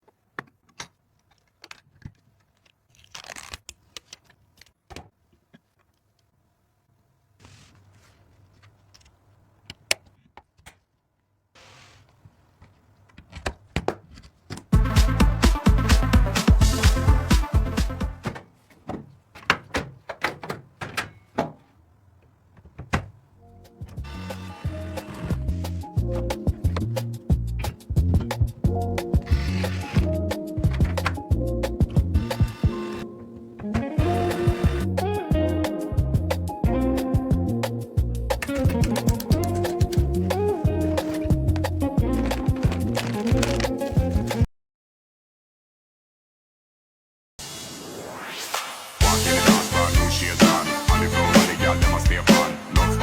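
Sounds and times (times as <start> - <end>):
beat-driven music: 14.8 - 18.2, 33.8 - 44.2, 48.3 - 53.0
clicks and knocks of pc parts: 18.2 - 21.7.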